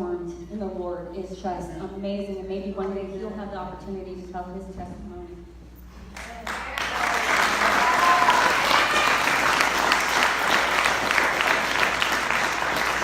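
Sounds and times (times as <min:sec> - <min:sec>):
crowd applauding: 0:06.2 - 0:13.0.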